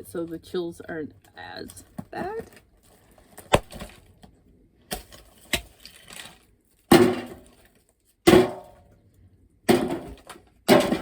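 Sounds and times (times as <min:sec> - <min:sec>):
coal lumps clattering: 0:04.9 - 0:08.9, 0:09.6 - 0:11.0.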